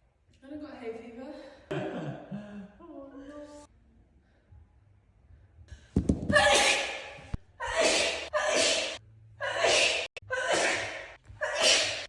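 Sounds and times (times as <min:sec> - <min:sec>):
person sneezing: 0:07.7 - 0:12.0.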